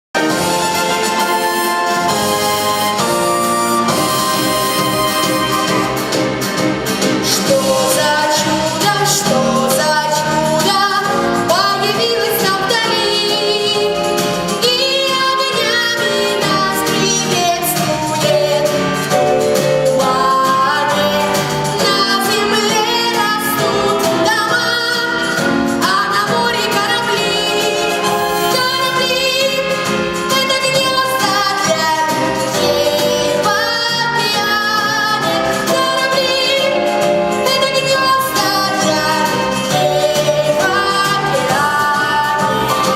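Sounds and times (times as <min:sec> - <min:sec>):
sustained instrumental accompaniment: 0:00.2 - 0:42.9
woman singing a slow ballad: 0:07.3 - 0:19.1, 0:19.8 - 0:42.9.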